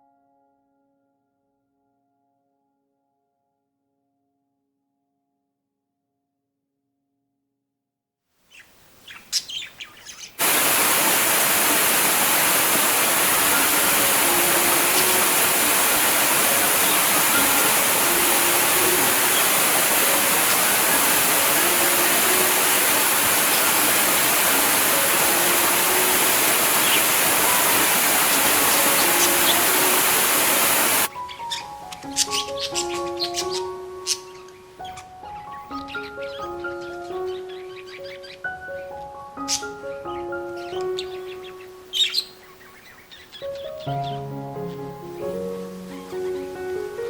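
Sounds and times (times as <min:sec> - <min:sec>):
faint bird chirps: 0:08.5 - 0:44.3
rush of flowing water: 0:10.4 - 0:31.2.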